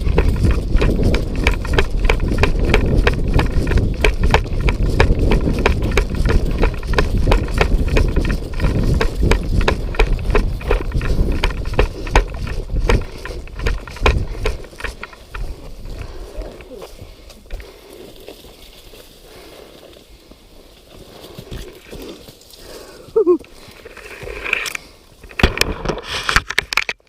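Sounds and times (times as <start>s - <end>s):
low rumble of handled microphone: 0.0s - 18.7s
footsteps: 0.0s - 26.4s.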